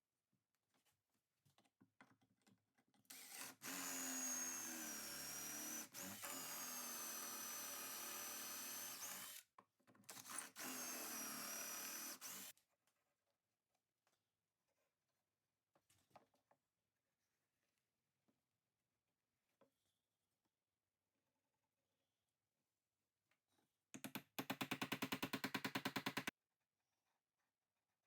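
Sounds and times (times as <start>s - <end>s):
power tool motor whining: 3.1s - 9.4s.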